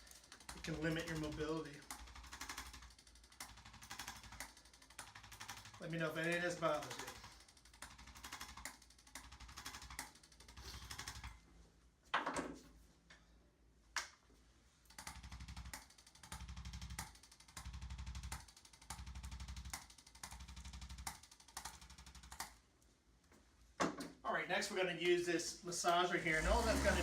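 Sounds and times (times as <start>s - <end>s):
adjusting instrument rapid taps: 0.0s - 11.2s.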